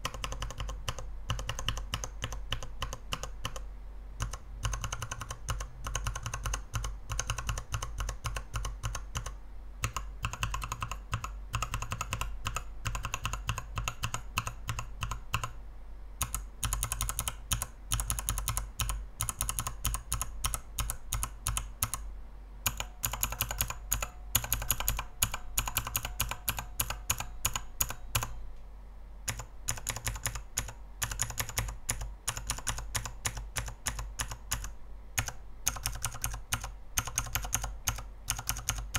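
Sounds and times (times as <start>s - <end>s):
keyboard switches clacking: 22.7s - 28.4s, 29.3s - 38.9s.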